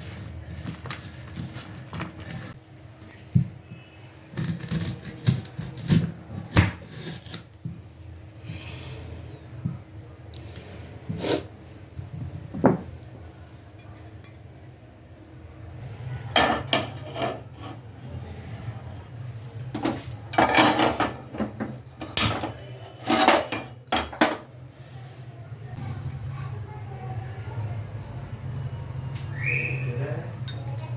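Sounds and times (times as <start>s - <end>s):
kitchen utensils clattering: 16.2s - 18.4s, 19.6s - 24.7s.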